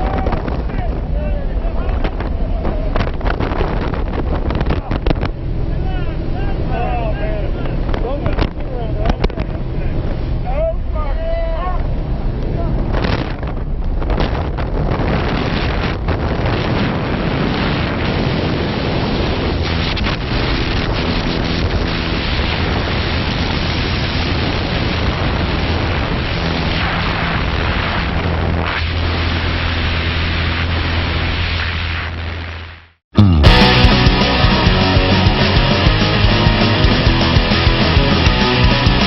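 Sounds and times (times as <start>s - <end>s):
wind buffeting microphone: 0.0s - 32.5s
steady low drone: 33.2s - 39.0s.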